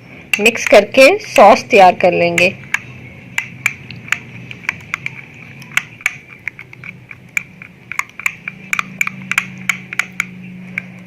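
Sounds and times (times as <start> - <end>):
spoon clicking against bowl: 2.3 - 10.9
spoon stirring thick sauce: 2.3 - 11.0.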